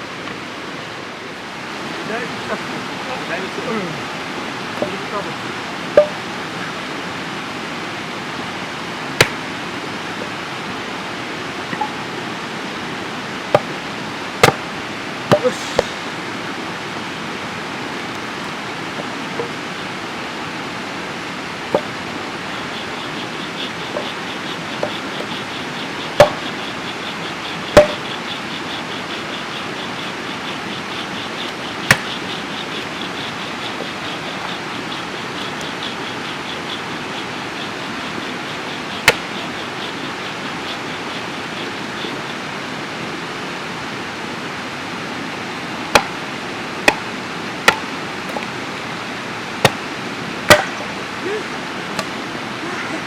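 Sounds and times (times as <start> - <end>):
steady rushing noise: 0.0 - 36.4
loud sharp knocks: 14.4 - 14.7, 21.7 - 21.9, 26.2 - 26.5, 27.8 - 28.1, 39.1 - 39.3, 45.9 - 46.2, 47.7 - 47.9, 50.5 - 50.9.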